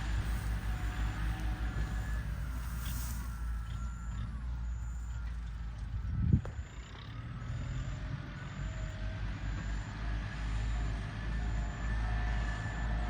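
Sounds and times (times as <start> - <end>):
heavy engine rumbling: 0.0 - 13.0.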